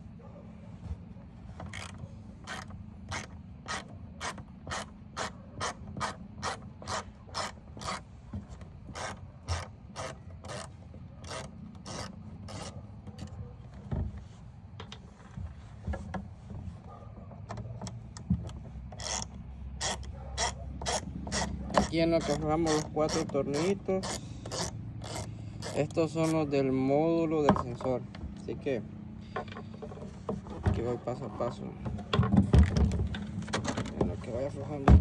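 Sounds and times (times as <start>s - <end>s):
ratchet wrench ratcheting: 1.7s - 8.1s, 8.8s - 13.3s, 18.9s - 26.4s.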